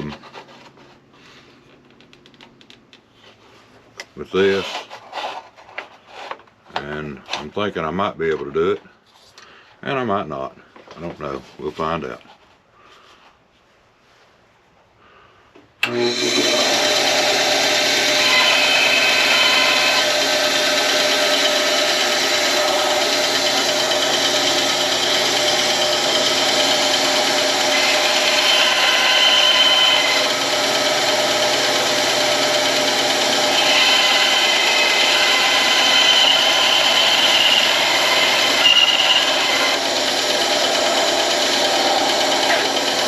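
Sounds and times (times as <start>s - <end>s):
power tool whining through wood: 15.8s - 43.0s.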